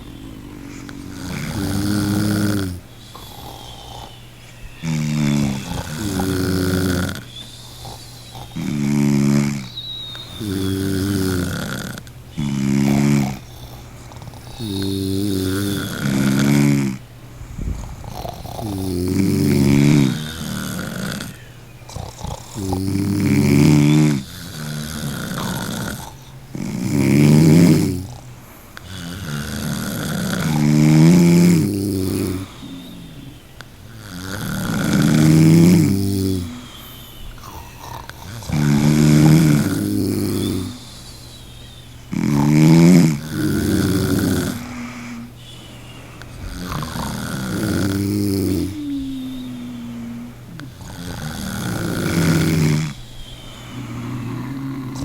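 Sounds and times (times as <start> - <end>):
person snoring: 0.0 - 55.0
quiet breathing: 0.0 - 55.0.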